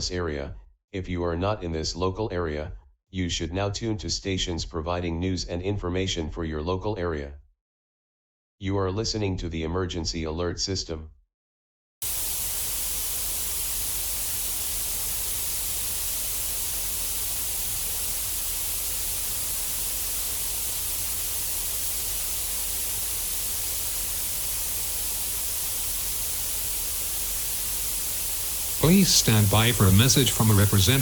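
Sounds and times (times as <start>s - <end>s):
static hiss: 12.0s - 31.0s.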